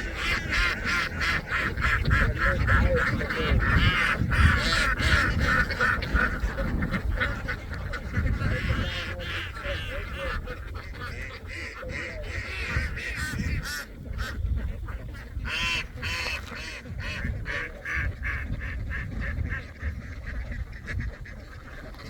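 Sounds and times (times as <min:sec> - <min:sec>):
ducks quacking: 0:00.0 - 0:22.0.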